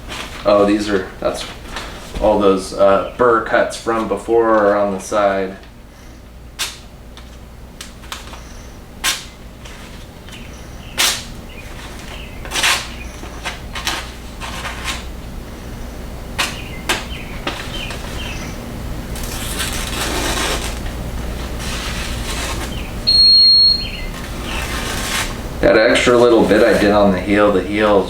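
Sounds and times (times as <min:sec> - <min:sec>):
paper rustling: 0:00.0 - 0:05.0, 0:06.6 - 0:15.8, 0:16.4 - 0:23.1, 0:24.0 - 0:28.0
paper being sliced: 0:19.1 - 0:22.8, 0:24.2 - 0:25.4.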